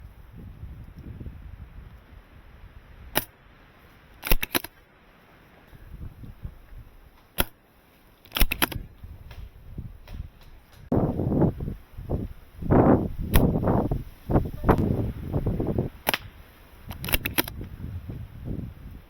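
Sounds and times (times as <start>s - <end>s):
wind rumble on microphone: 0.0s - 4.2s, 5.7s - 7.2s, 8.5s - 19.0s
airsoft rifle shot crack: 3.1s - 3.4s, 4.2s - 4.8s, 7.3s - 7.6s, 8.3s - 10.3s, 13.3s - 13.6s, 16.0s - 17.6s
quick run of clicks: 4.2s - 4.8s, 8.2s - 10.9s, 16.9s - 17.7s.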